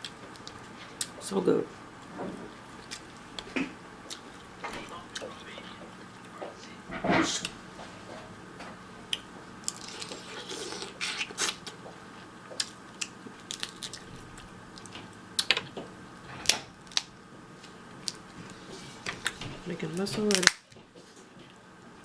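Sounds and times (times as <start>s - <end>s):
wet squishing and chewing: 2.6s - 3.5s, 9.1s - 11.8s, 12.5s - 15.6s
crab shell cracking: 12.6s - 14.0s, 16.4s - 17.1s, 20.2s - 20.8s.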